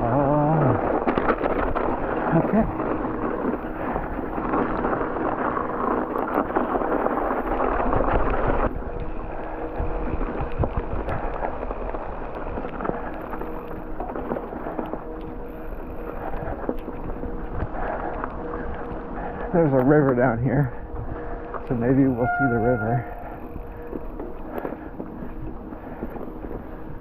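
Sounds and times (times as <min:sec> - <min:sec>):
bike rattling: 0:00.0 - 0:27.0
bike tyres on snow: 0:00.0 - 0:27.0
faint steady hum: 0:00.0 - 0:27.0
wind on microphone: 0:06.5 - 0:12.0.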